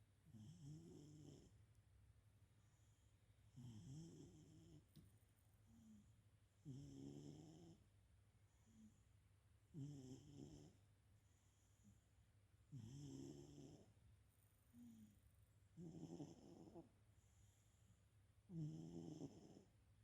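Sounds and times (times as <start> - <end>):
cat snoring softly: 0.2 - 1.6, 2.8 - 5.0, 5.7 - 7.9, 9.7 - 10.8, 12.7 - 14.0, 14.7 - 17.8, 18.5 - 19.8
quiet breath sound: 2.4 - 19.8.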